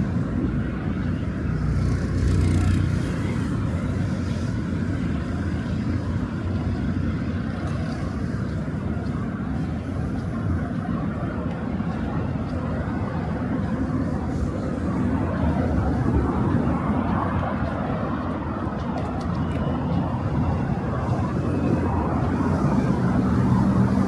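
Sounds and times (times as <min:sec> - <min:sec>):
road traffic rumble: 0:00.0 - 0:24.0
vehicle passing: 0:19.9 - 0:24.0.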